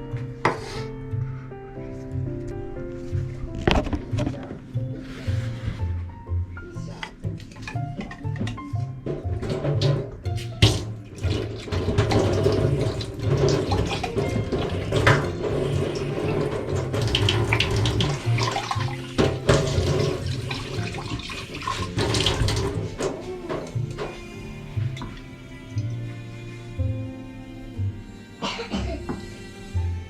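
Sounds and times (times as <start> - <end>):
water running from a tap: 9.1 - 26.0.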